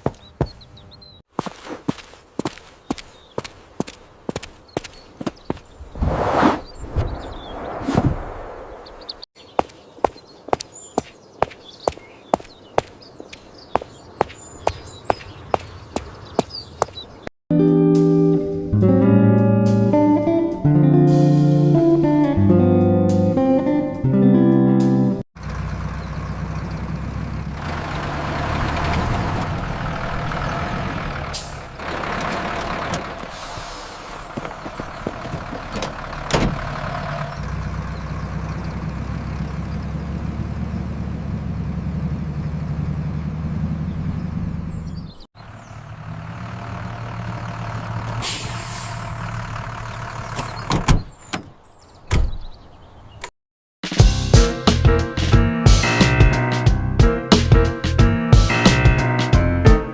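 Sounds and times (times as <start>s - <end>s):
large vehicle engine running: 25.4s - 50.7s.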